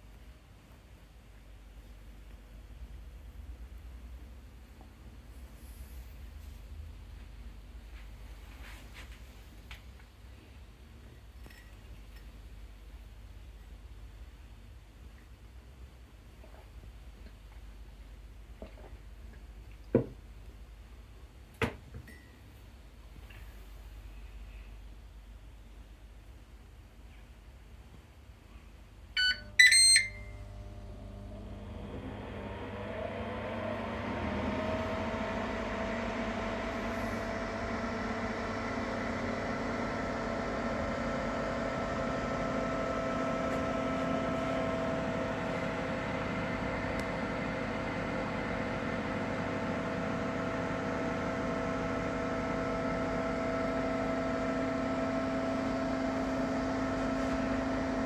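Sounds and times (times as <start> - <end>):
cooker fan whirring hum: 0.0 - 58.0
short electronic beeps: 29.2 - 30.4
steady whine: 29.2 - 50.5.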